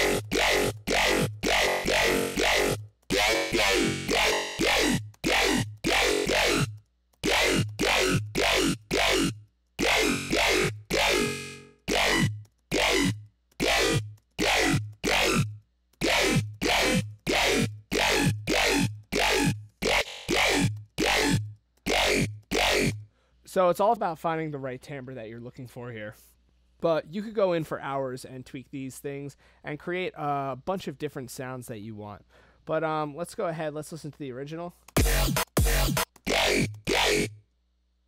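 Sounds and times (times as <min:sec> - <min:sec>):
growling synth bass hits: 0:00.0 - 0:23.0.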